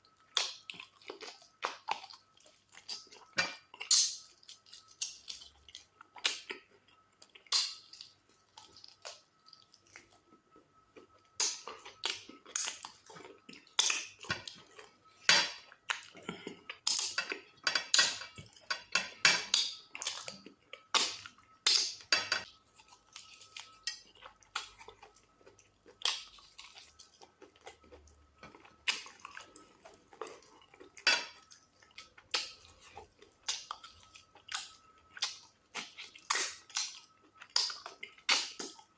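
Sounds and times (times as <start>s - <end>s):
dishes and cutlery clinking: 17.1s - 19.8s, 22.1s - 22.5s, 31.0s - 31.4s
faint steady high tone: 19.9s - 35.6s.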